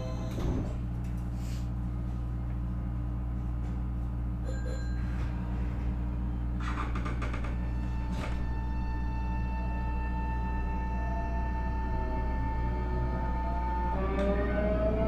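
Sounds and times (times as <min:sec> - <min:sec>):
brief tone: 0:04.4 - 0:05.3
electric train humming: 0:07.5 - 0:15.0.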